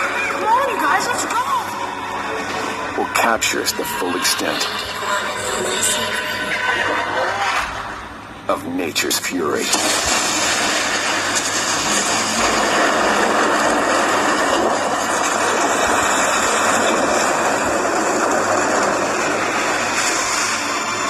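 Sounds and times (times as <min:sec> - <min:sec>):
storm-like rushing noise: 0:09.7 - 0:21.0.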